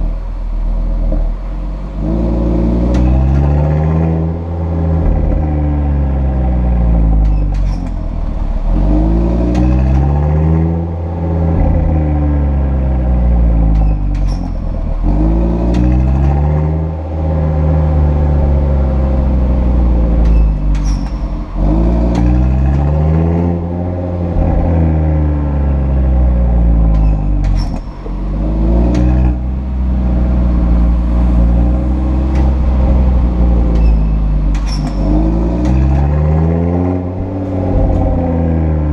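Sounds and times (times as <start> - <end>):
car engine revving: 0.0 - 38.9
exhaust flaps squeaking: 2.8 - 38.9.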